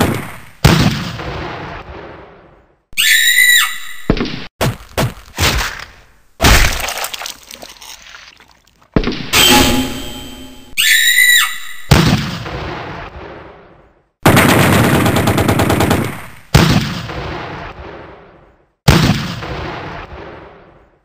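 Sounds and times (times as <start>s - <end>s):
short electronic tone: 9.4s - 10.8s
rapid gunfire burst: 14.2s - 16.2s.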